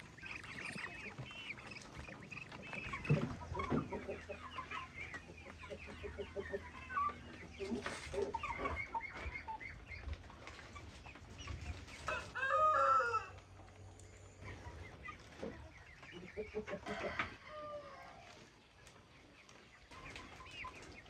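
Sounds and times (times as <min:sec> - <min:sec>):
chickens clucking and chirping: 0:00.0 - 0:21.0
rooster crowing: 0:12.1 - 0:13.4.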